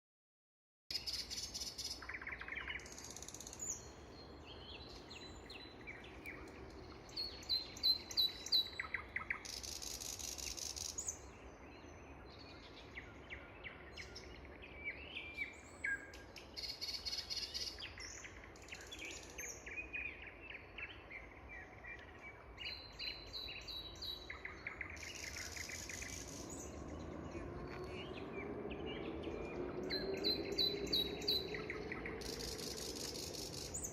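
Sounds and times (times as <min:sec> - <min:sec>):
nightingale singing: 0:00.9 - 0:33.9.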